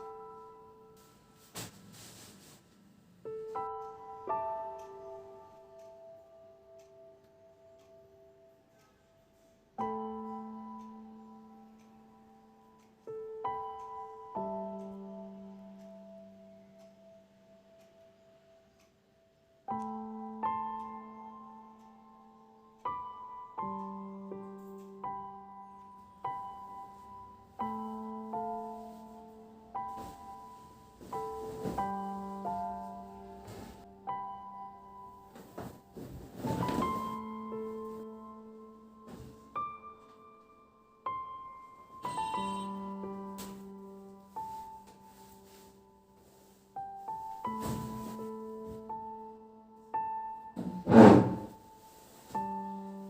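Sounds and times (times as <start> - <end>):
slow piano chords: 0.0 - 53.0.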